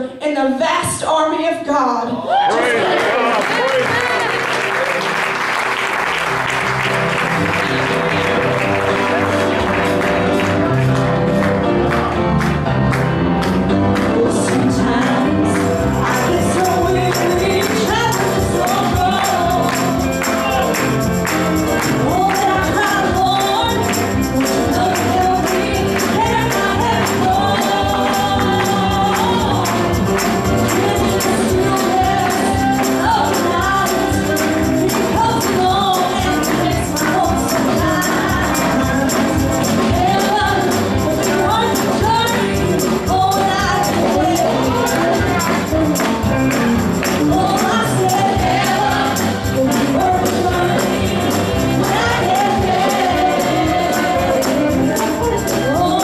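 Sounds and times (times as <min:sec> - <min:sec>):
gospel singing over a band: 0:13.9 - 0:56.0
tambourine shaking: 0:15.6 - 0:56.0.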